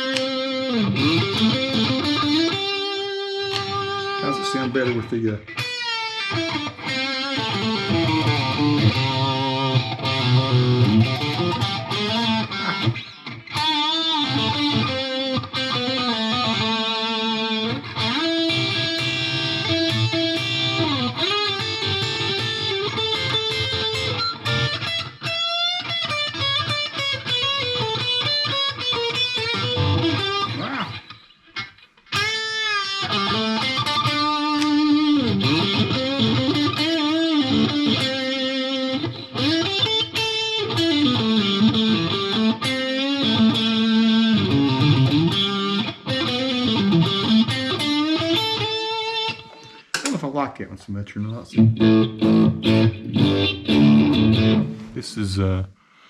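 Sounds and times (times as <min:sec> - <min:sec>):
distorted electric guitar lead: 0:00.0 - 0:50.2, 0:51.5 - 0:55.4.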